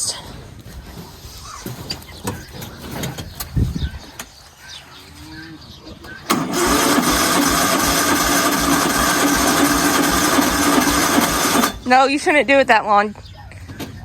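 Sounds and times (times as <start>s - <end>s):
motor running with low pulse: 6.3s - 11.9s.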